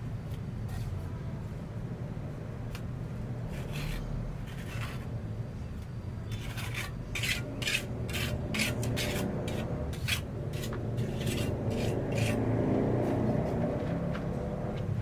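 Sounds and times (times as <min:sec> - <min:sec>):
hand tool scraping hard surface: 0:03.5 - 0:05.1, 0:06.3 - 0:13.6.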